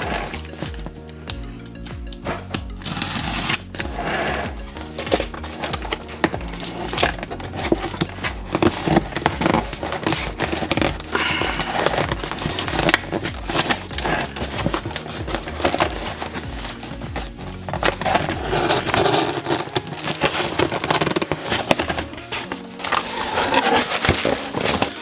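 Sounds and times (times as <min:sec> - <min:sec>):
background music: 0:00.0 - 0:25.0
wrapper tearing and crinkling: 0:04.6 - 0:25.0.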